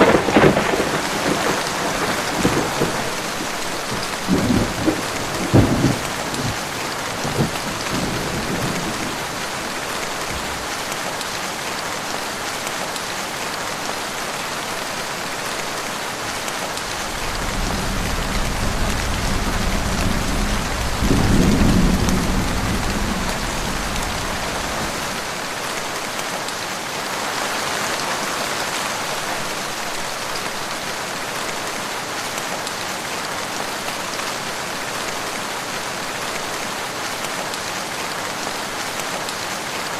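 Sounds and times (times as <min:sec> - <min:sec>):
sharp crack of thunder: 0:00.0 - 0:09.2, 0:16.9 - 0:25.2
low rumble of thunder: 0:00.0 - 0:09.3, 0:16.8 - 0:25.3
heavy rain falling: 0:00.0 - 0:39.9.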